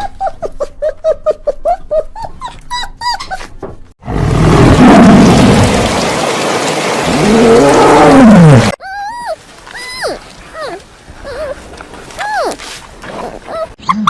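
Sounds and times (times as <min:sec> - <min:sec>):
harsh animal roar: 0:07.1 - 0:08.8.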